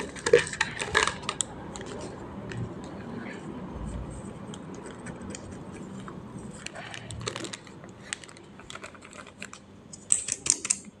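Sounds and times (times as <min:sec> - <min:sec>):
hands handling balloon and craft materials: 0:04.1 - 0:09.5.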